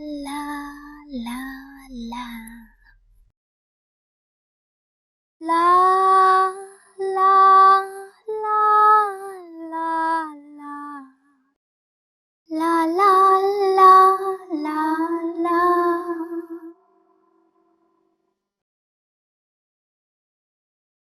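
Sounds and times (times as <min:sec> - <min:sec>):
girl singing wordless tune: 0:00.0 - 0:02.9, 0:05.4 - 0:11.3, 0:12.5 - 0:17.5.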